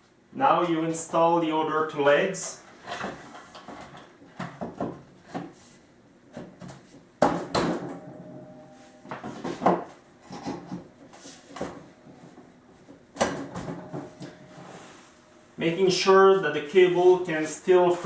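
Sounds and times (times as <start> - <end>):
handling noise: 6.4 - 15.6.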